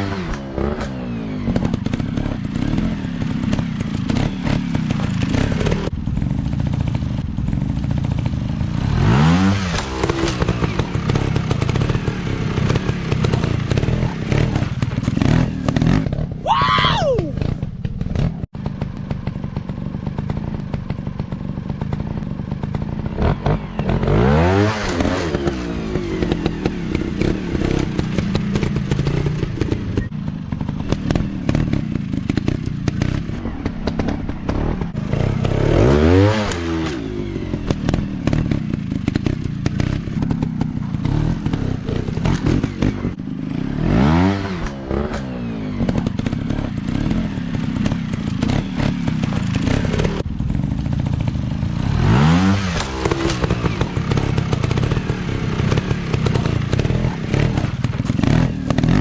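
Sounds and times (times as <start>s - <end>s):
dirt bike engines revving: 0.0s - 59.0s.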